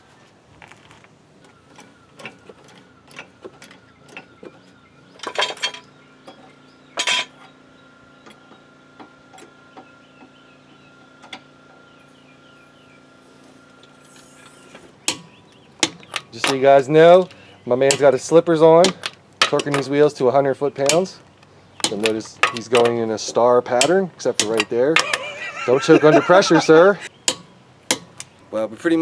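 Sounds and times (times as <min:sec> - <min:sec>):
metallic clinking of tools: 0:01.5 - 0:07.5, 0:15.0 - 0:20.0, 0:21.8 - 0:26.7.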